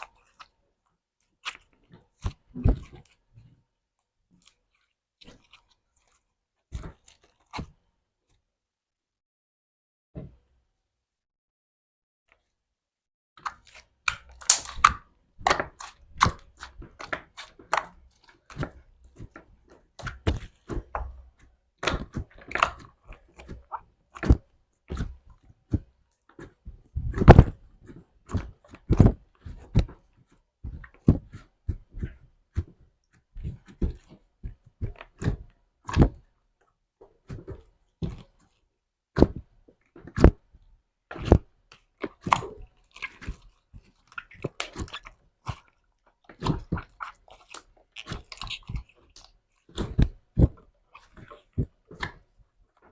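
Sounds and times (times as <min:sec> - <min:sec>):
slime clicking and popping: 0:13.4 - 0:18.7.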